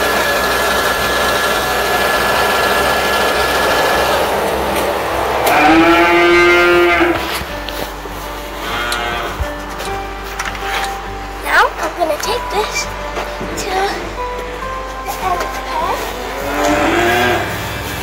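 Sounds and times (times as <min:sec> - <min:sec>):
cow mooing: 0:02.9 - 0:07.7, 0:08.6 - 0:09.5, 0:16.3 - 0:17.7.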